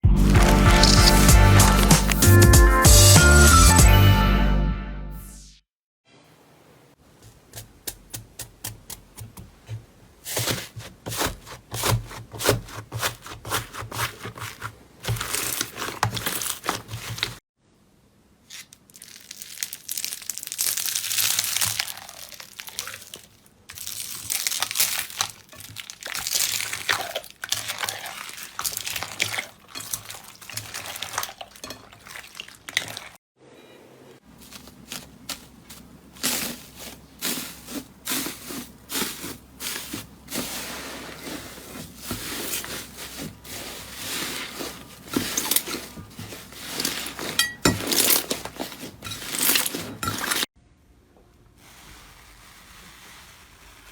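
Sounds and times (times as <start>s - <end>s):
slime squelching with sticky pops: 18.5s - 33.2s.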